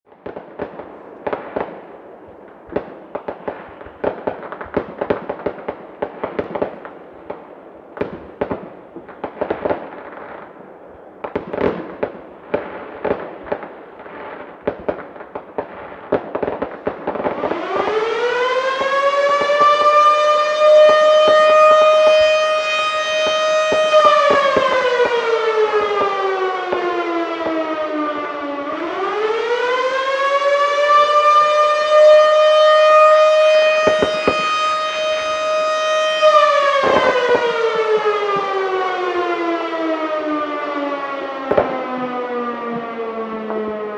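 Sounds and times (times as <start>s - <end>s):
fireworks cracking and banging: 0.1s - 28.7s, 33.6s - 35.4s, 36.2s - 38.7s, 41.4s - 42.0s
warning siren wailing: 17.0s - 43.9s.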